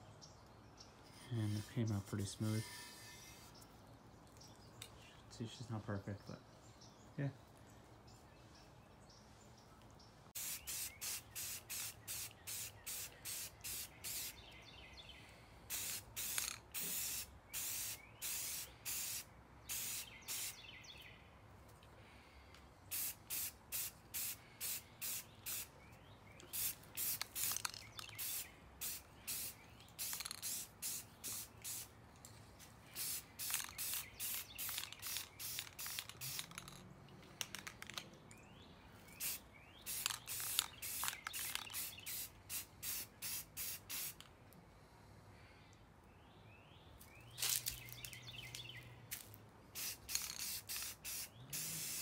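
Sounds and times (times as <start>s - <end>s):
spray can hissing: 10.4s - 14.4s, 15.7s - 20.6s, 22.9s - 25.7s, 26.5s - 31.9s, 33.0s - 36.7s, 39.2s - 44.2s, 49.8s - 52.0s.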